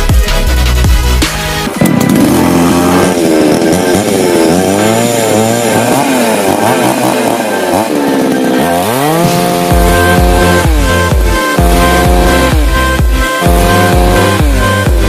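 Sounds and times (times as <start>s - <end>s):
chainsaw engine revving: 1.5s - 15.0s.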